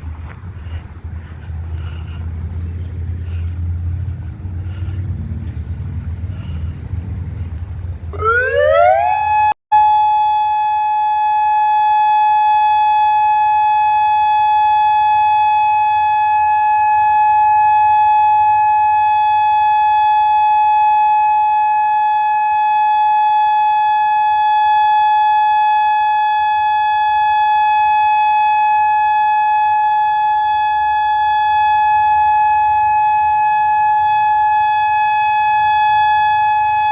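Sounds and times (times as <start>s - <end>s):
warning siren: 8.1s - 36.9s.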